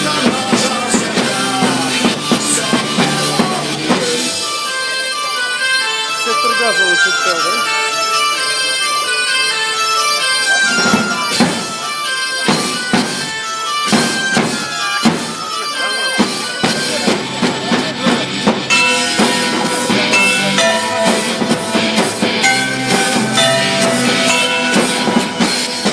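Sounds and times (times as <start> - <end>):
reedy melody: 0.0 - 25.9
drum hits: 10.7 - 11.9, 16.2 - 25.9.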